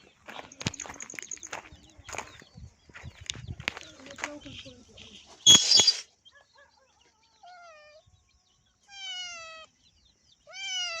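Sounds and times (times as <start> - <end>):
small animal high-pitched calls: 8.8 - 9.7, 10.4 - 11.0.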